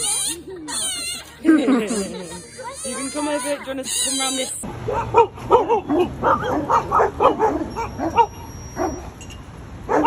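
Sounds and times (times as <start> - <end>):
dog yipping and whining: 4.0 - 9.2.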